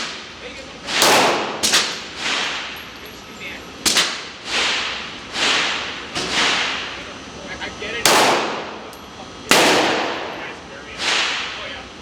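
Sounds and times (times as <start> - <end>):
dull gunshot reports: 0.9 - 2.6, 8.0 - 8.8, 9.5 - 11.6
pistol shots with echo: 0.9 - 2.7, 3.8 - 7.0, 8.0 - 8.9, 9.5 - 11.6.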